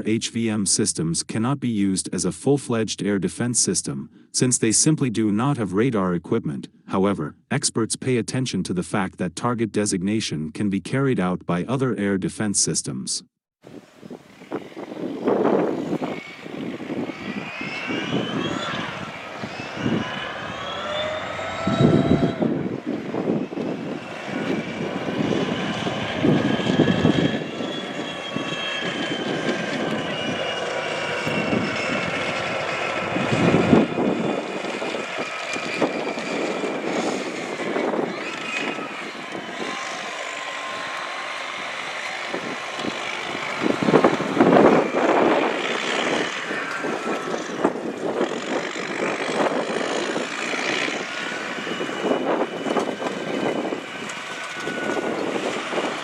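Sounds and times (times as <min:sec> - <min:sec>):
aircraft engine whining: 0:13.6 - 0:56.0.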